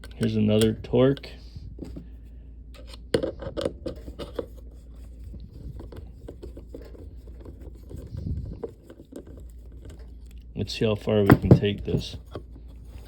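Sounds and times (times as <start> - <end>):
screwdriver scraping and ticking: 2.8 - 10.4.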